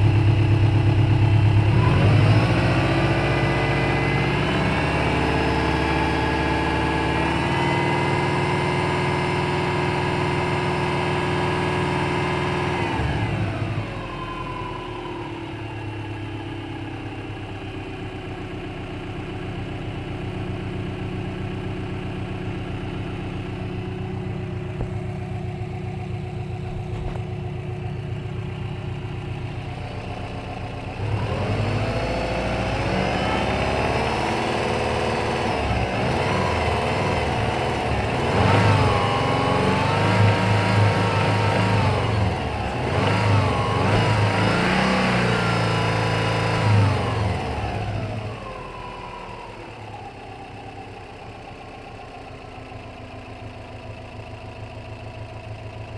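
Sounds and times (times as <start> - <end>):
engine idling and revving: 0.0 - 55.9.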